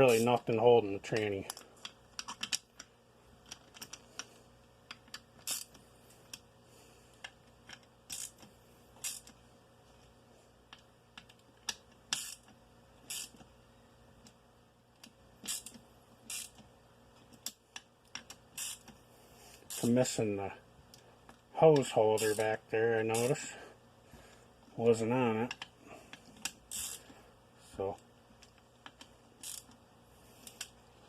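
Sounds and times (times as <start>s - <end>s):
hand ratchet clicking: 0.1s - 0.4s, 4.9s - 5.8s, 7.2s - 9.4s, 11.2s - 13.4s, 15.4s - 16.6s, 17.4s - 19.0s, 22.2s - 22.4s, 26.4s - 27.0s, 28.8s - 29.8s.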